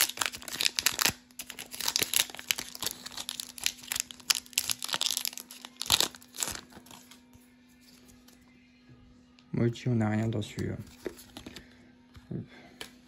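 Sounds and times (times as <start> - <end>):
foil wrapper crinkling and tearing: 0.0 - 7.2.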